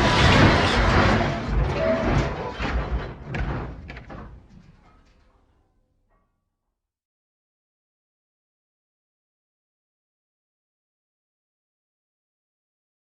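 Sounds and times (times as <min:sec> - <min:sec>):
knocks: 0:00.0 - 0:05.4
train crash clattering: 0:00.0 - 0:05.7.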